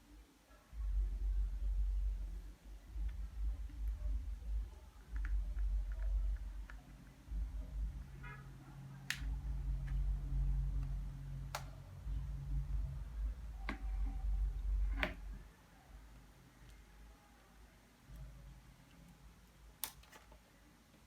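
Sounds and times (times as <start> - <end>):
low hum: 0.0 - 16.4.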